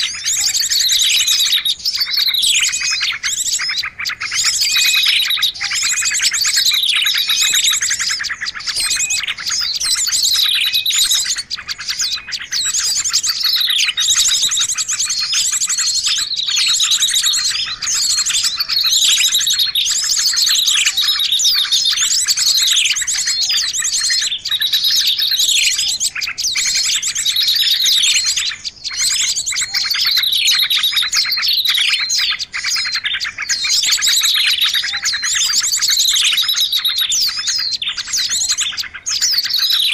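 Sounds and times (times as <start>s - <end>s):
small songbirds chirping: 0.0s - 39.9s.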